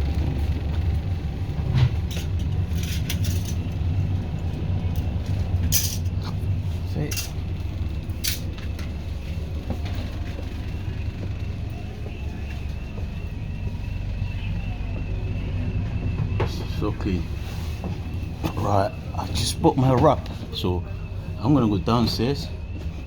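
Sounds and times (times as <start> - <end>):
low rumble: 0.0 - 23.0
light clinks and clatters: 1.8 - 3.8, 7.0 - 8.9
faint voices: 9.5 - 23.0.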